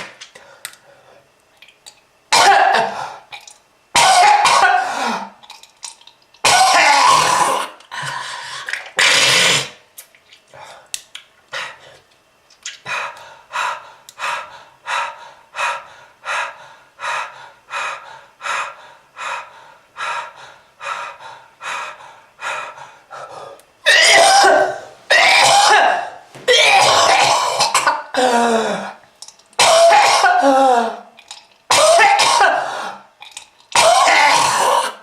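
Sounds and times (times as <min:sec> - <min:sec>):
person coughing: 0:02.3 - 0:03.0, 0:04.0 - 0:05.4, 0:06.4 - 0:07.8, 0:23.8 - 0:29.0, 0:29.6 - 0:31.0, 0:31.7 - 0:32.9, 0:33.8 - 0:35.0
harsh hacking and throat-clearing: 0:06.4 - 0:09.8, 0:23.8 - 0:29.0, 0:29.6 - 0:35.0.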